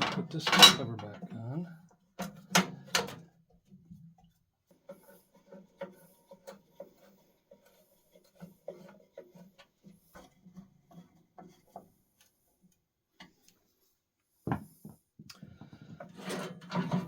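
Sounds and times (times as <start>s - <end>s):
metal parts clicking and tapping: 0.0s - 0.8s.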